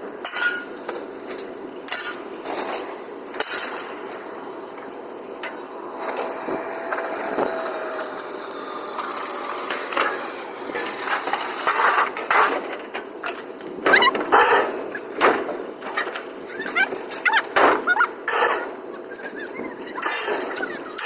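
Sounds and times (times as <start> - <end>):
scrap metal clanking on ground: 0.2 - 4.2.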